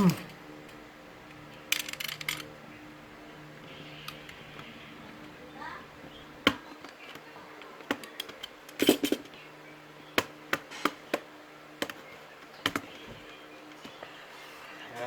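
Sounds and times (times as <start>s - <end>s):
tools clicking on plastic case: 6.5s - 9.3s.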